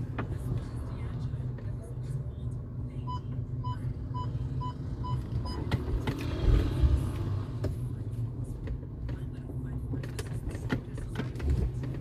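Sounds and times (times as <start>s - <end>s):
car low rumble: 0.0s - 12.0s
car warning beeps: 3.0s - 5.7s.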